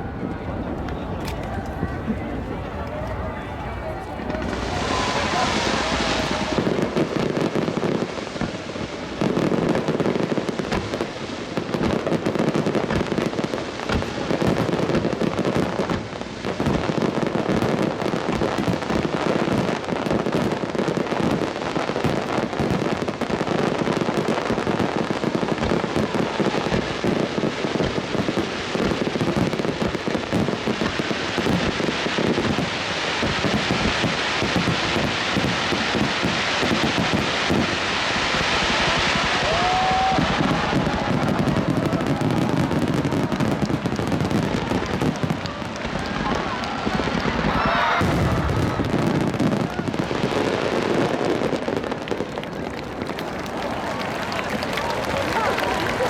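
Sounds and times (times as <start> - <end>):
fireworks bursting and crackling: 0.0 - 56.0.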